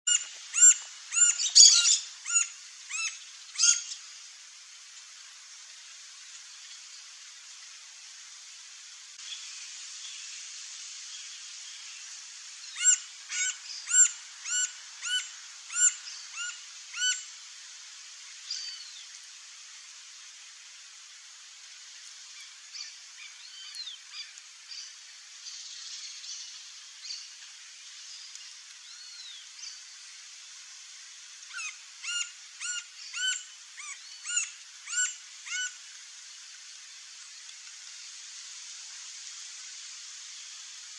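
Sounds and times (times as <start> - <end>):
steady outdoor hiss: 0.0 - 40.9
woodpecker calling ringing notes: 0.1 - 3.8
woodpecker calling: 0.1 - 3.9, 12.8 - 17.2, 31.6 - 35.7.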